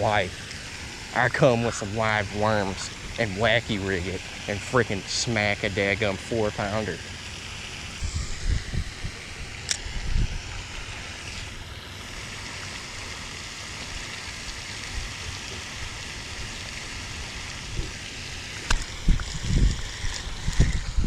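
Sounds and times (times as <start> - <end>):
wind noise on microphone: 8.0 - 11.5, 18.7 - 21.0.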